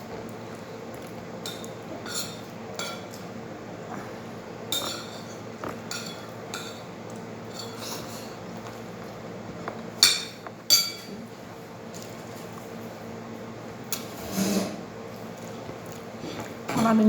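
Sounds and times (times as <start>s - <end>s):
cutlery clinking on a plate: 1.4s - 3.2s, 4.7s - 8.4s, 10.0s - 11.2s.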